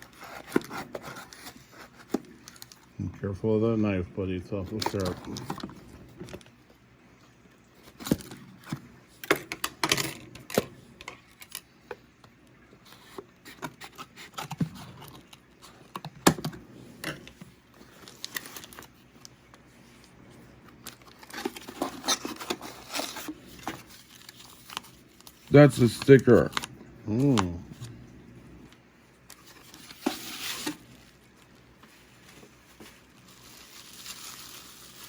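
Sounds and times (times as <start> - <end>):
packaging rustling: 0.0 - 2.9, 4.7 - 6.6, 12.8 - 28.0, 29.2 - 35.0.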